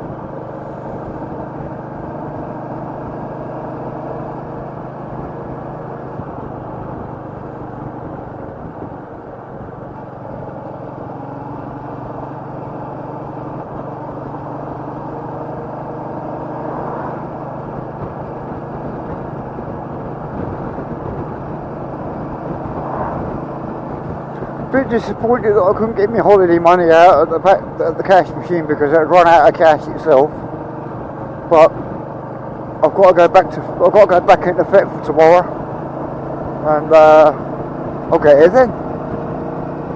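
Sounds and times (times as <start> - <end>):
motorcycle engine running: 0.0 - 39.9
road noise: 0.0 - 39.9
wind: 0.0 - 39.9.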